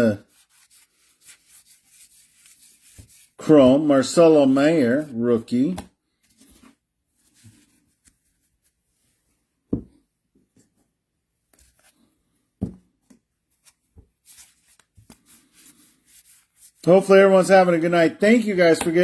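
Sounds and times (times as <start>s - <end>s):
trading cards sliding and rustling: 5.7s - 9.1s, 11.5s - 12.3s, 13.5s - 17.8s
cards set down with soft thumps: 9.7s - 10.8s, 11.5s - 15.4s.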